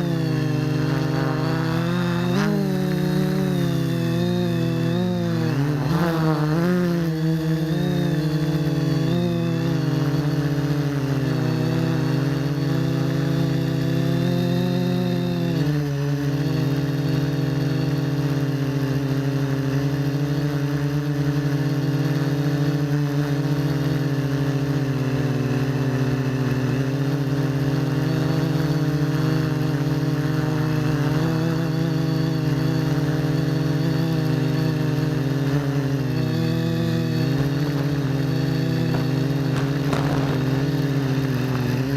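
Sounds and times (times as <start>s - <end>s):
quadcopter propellers whirring: 0.0s - 41.9s.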